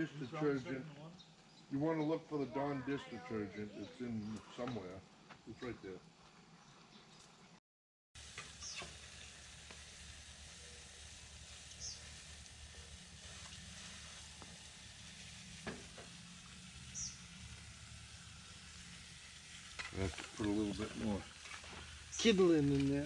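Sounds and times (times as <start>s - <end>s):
food sizzling in a pan: 8.2s - 23.0s
sharp crackles: 8.2s - 23.0s.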